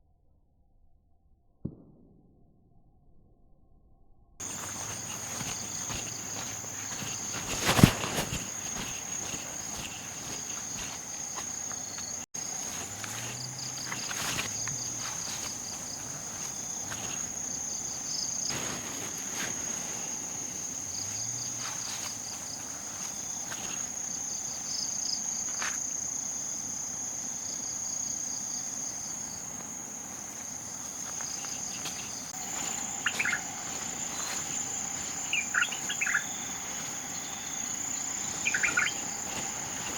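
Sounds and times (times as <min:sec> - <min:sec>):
insects droning: 0:04.4 - 0:39.9
bird chirps: 0:32.4 - 0:39.9.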